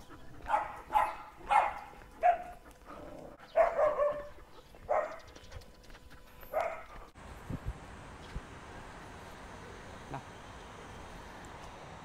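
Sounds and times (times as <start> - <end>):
dog barking: 0.4 - 2.6, 3.5 - 5.2, 6.5 - 6.9.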